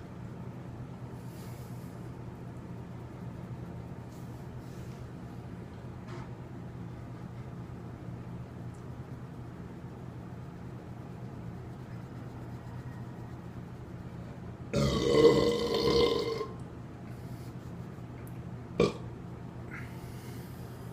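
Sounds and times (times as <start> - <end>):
man burping loudly: 14.8 - 16.6, 18.8 - 19.0.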